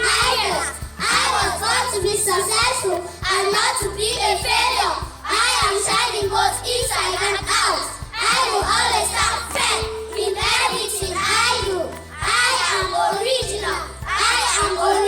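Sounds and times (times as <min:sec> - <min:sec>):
background music with beat: 0:00.0 - 0:15.0
children singing together: 0:00.0 - 0:15.0.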